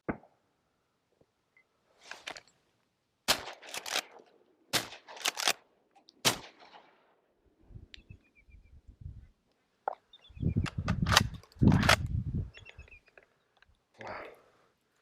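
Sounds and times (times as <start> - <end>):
shotgun shots: 3.3 - 5.6, 6.2 - 7.2
fainter sharp cracks: 3.3 - 7.2.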